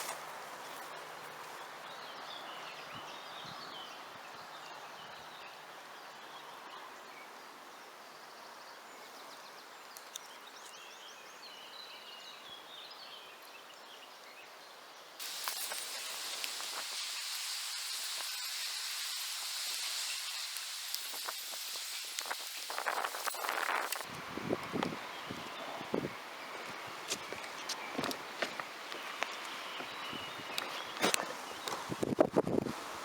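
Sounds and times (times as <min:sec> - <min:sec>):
steady background hiss: 0:00.0 - 0:33.0
small birds chirping: 0:08.1 - 0:32.0.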